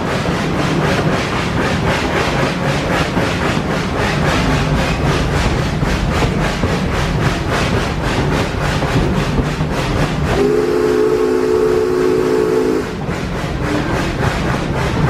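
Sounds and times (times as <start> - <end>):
train clattering: 0.0 - 15.0
train whistle chord: 10.3 - 13.0.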